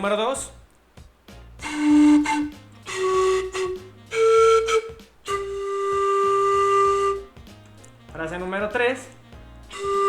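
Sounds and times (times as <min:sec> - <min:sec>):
panpipe melody: 0:01.6 - 0:07.6, 0:09.6 - 0:10.0.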